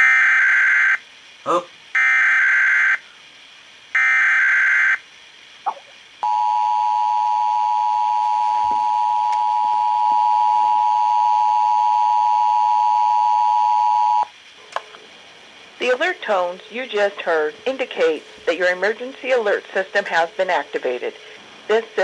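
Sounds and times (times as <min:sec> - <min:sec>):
two-tone attention signal: 0:06.2 - 0:14.3.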